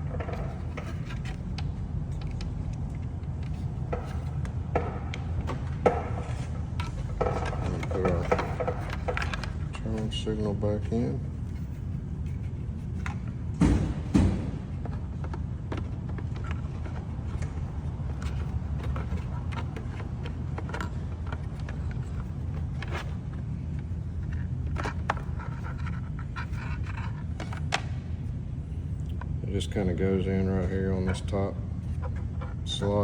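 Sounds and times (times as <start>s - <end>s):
steady low hum: 0.0s - 33.0s
louder knocks: 13.6s - 14.7s.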